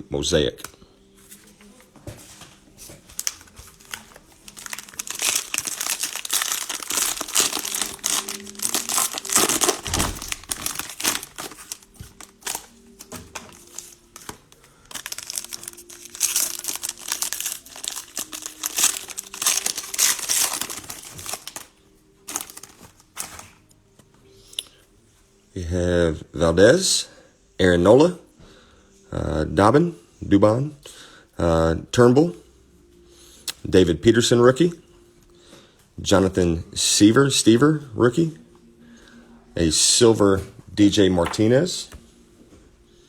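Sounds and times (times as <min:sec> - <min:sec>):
cellophane crinkling and tearing: 0:02.8 - 0:23.7.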